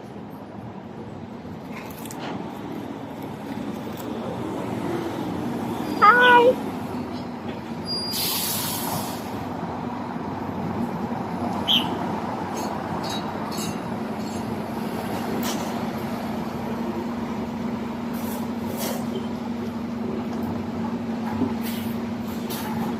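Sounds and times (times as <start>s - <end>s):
street traffic: 0.0s - 22.9s
burst of hiss: 8.1s - 9.4s.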